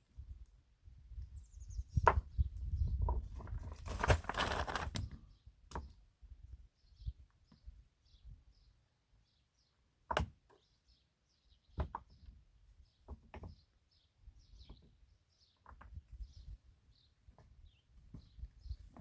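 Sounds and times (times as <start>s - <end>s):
small bird chirping: 1.2s - 3.1s.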